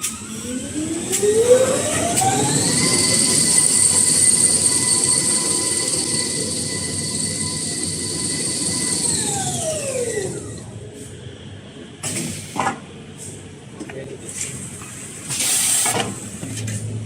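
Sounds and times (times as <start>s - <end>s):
machine motor whine: 0.0s - 10.8s.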